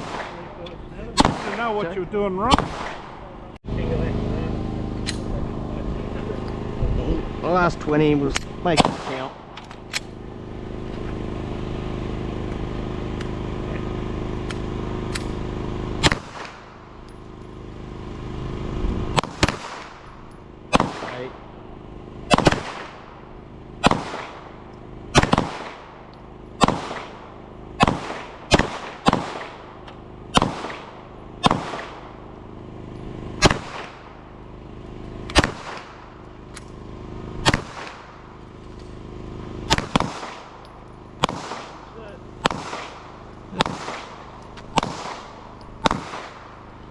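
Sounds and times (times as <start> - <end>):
steady low hum: 0.0 - 46.9
handgun shots with echo: 1.2 - 1.7, 35.3 - 35.9, 43.6 - 46.5.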